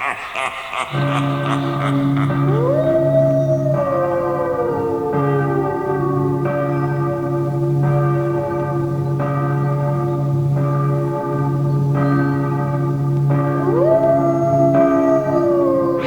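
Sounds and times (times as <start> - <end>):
low steady drone: 0.0 - 9.0, 12.4 - 16.0
church bell tolling: 0.9 - 16.0.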